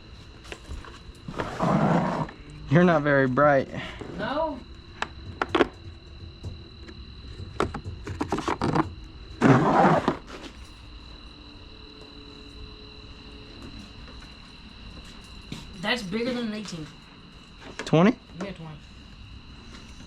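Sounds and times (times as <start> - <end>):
faint high whine: 0.0 - 20.0
rattling scrape: 1.3 - 2.4.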